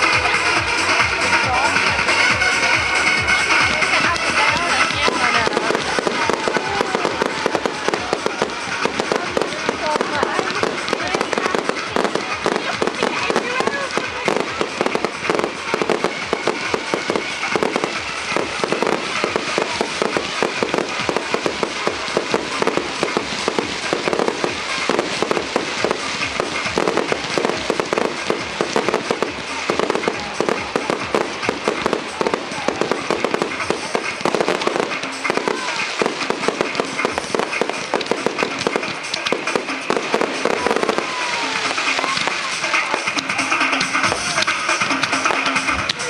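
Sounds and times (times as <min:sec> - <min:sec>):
fireworks bangs and crackles: 0:00.0 - 0:46.0.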